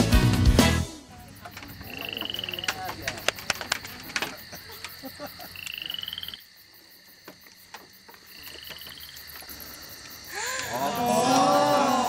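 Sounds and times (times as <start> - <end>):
frogs calling: 1.0 - 12.0
faint clicks: 1.4 - 5.2.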